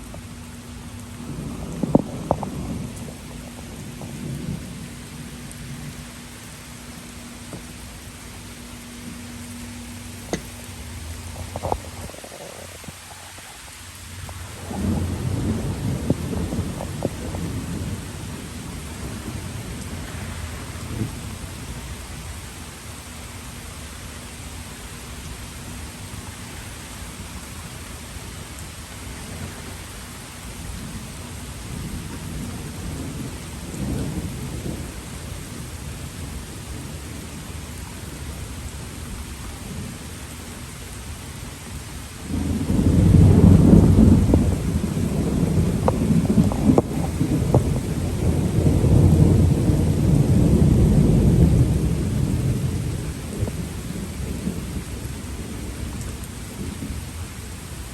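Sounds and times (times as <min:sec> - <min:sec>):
thunder rolling: 0:00.0 - 0:22.0, 0:31.7 - 0:35.6, 0:42.3 - 0:56.0
rain falling: 0:00.0 - 0:57.9.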